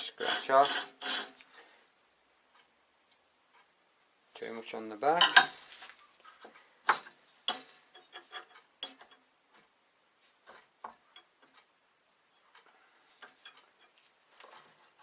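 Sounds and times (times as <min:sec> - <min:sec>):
light clicks and taps of tools: 0:12.5 - 0:15.0.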